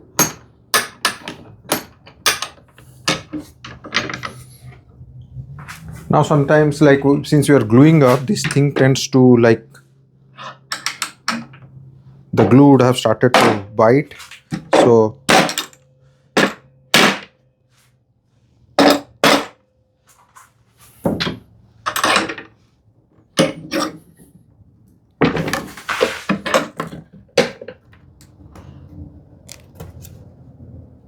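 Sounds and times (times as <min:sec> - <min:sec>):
wood scraping and rubbing: 0:25.4 - 0:26.5.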